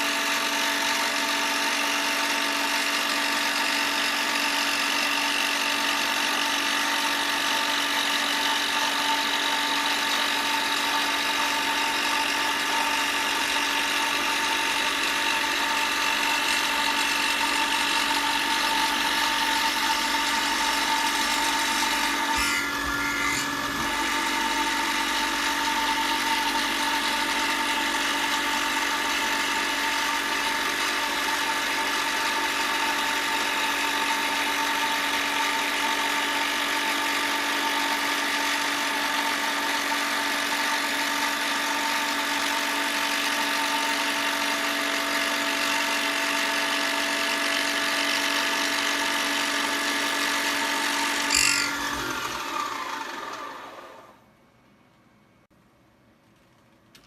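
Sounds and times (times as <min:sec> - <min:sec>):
power tool motor whining: 0:00.0 - 0:35.4, 0:45.3 - 0:54.1.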